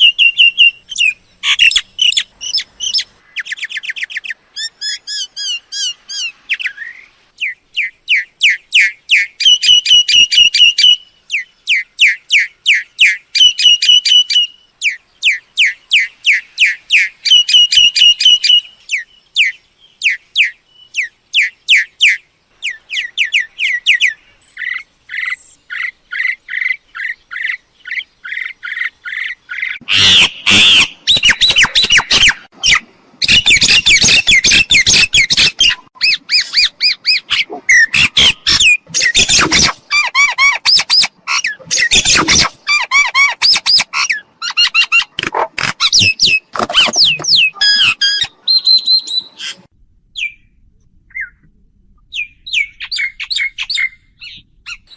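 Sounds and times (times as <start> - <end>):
mynas whistling and chattering: 29.9 - 45.2, 45.8 - 49.6.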